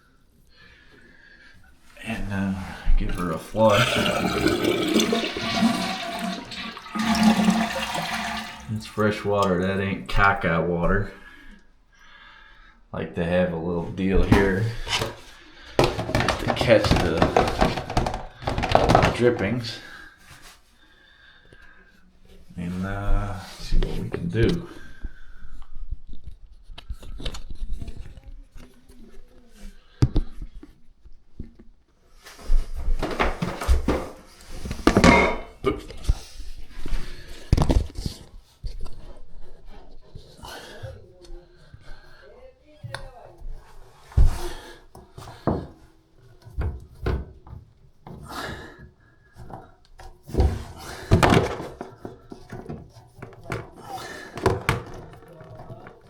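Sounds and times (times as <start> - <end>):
hands working on plumbing parts: 3.2 - 11.7, 14.2 - 20.4, 32.4 - 36.2, 42.8 - 56.0
knocks and clunks on toilet tank: 3.6 - 8.8, 14.3 - 19.5, 34.8 - 35.6, 49.4 - 56.0
scraping and rattling: 14.4 - 19.2.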